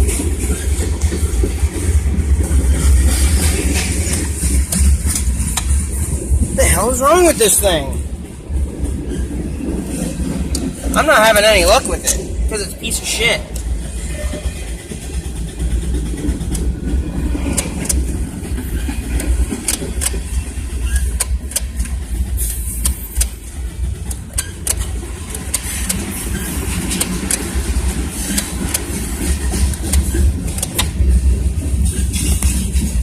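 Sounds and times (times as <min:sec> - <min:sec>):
car engine cranking on starter: 0:15.2 - 0:31.5.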